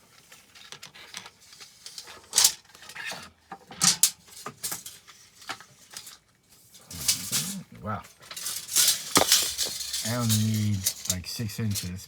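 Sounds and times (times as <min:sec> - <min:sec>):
charging cable clicks and rustles: 0:08.2 - 0:12.0.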